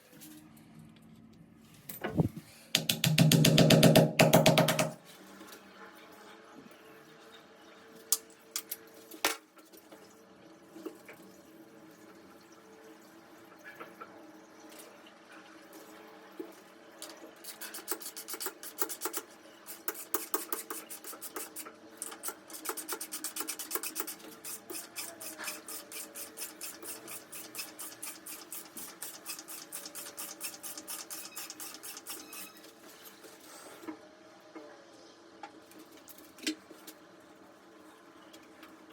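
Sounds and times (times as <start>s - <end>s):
sharp knocks on metal: 2.8s - 5.0s.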